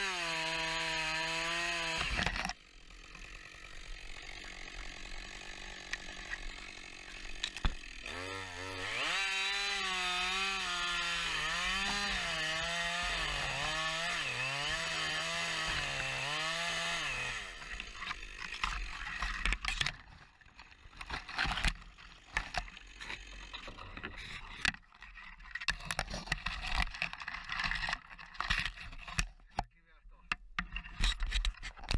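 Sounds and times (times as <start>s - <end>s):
chainsaw cutting at high throttle: 0.0s - 19.6s, 21.0s - 23.8s.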